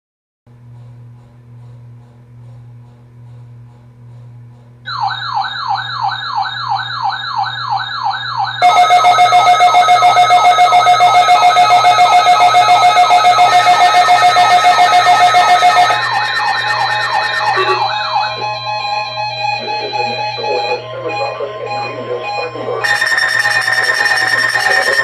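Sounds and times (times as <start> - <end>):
electronic siren sweeps: 4.9 - 25.0
low hum: 8.6 - 19.4
loud steady tones: 8.6 - 20.3, 22.8 - 25.0.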